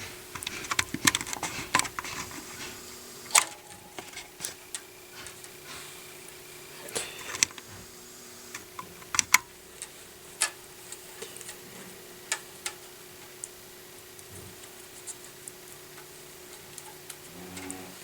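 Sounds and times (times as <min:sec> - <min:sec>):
hands handling tape and string: 0:00.0 - 0:05.9
faint steady hum: 0:00.0 - 0:18.0.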